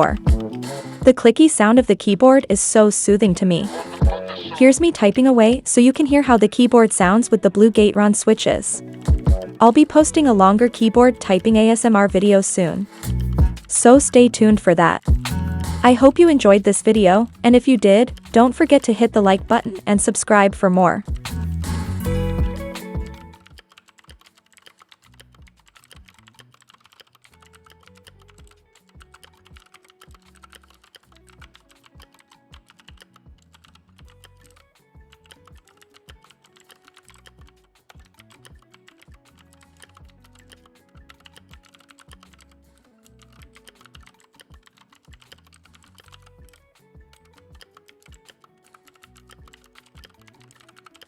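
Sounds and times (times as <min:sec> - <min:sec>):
mechanical keyboard typing clicks: 0:17.7 - 0:19.0, 0:22.8 - 0:51.0.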